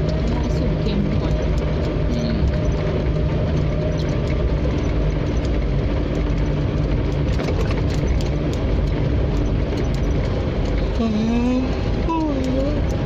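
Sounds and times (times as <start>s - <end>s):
small rattles and knocks: 0.0s - 11.0s
vehicle engine running: 0.0s - 13.0s.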